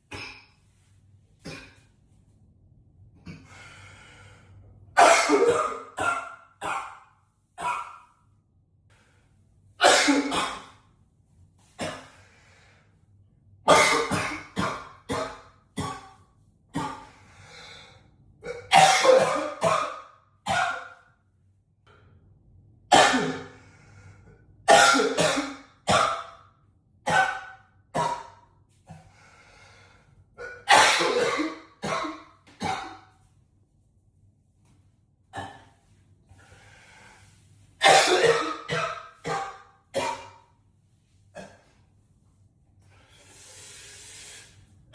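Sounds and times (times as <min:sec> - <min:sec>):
man coughing: 0:05.0 - 0:06.8, 0:09.8 - 0:10.7, 0:18.4 - 0:20.8, 0:22.9 - 0:23.5, 0:24.7 - 0:26.2, 0:30.4 - 0:33.0, 0:37.8 - 0:40.4.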